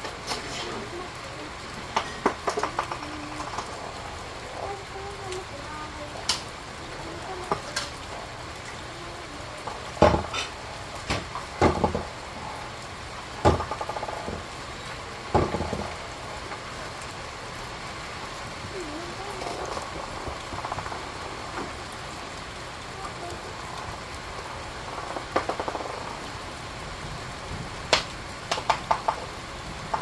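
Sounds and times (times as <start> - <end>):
steady rain: 0.0 - 30.0
sharp clattering knocks: 1.9 - 3.8, 9.6 - 12.1, 13.4 - 14.5, 24.8 - 26.1, 27.9 - 29.3.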